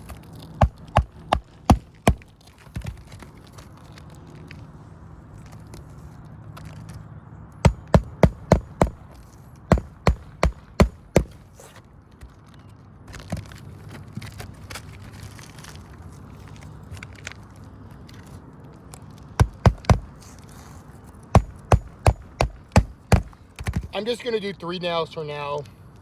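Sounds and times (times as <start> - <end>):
hammer driving nails into shingle: 0.6 - 3.2, 7.6 - 11.5, 19.4 - 20.2, 21.3 - 23.9.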